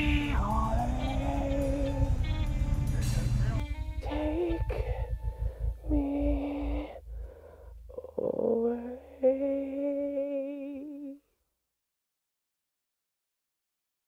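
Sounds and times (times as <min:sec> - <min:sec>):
sustained notes with vibrato: 0:00.0 - 0:10.6.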